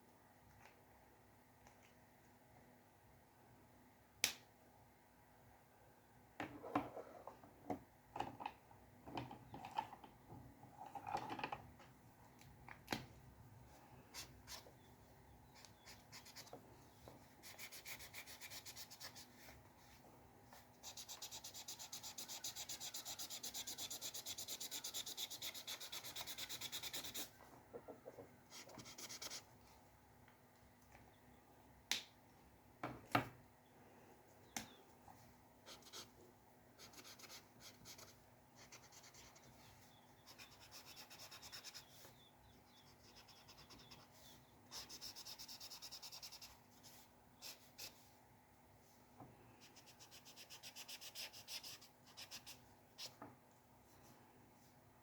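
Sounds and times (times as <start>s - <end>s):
rapid scratching on paper: 20.8s - 27.3s.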